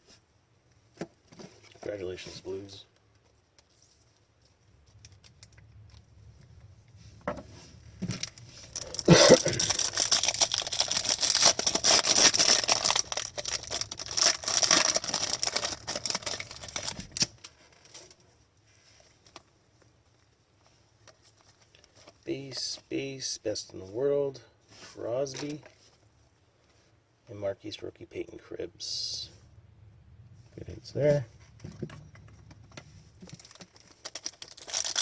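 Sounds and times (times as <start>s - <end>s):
faint handling rustle: 0.0s - 5.1s, 17.4s - 27.1s
foil wrapper tearing and crinkling: 8.2s - 17.9s, 33.2s - 35.0s.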